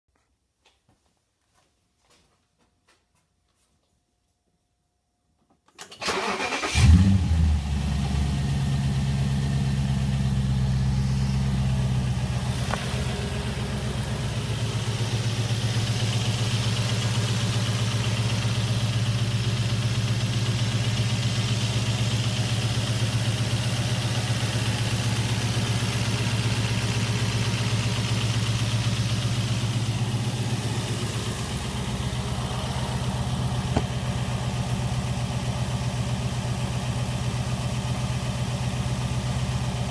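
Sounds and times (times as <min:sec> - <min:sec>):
car engine idling: 0:06.1 - 0:39.9
fast engine ticking: 0:10.0 - 0:35.5.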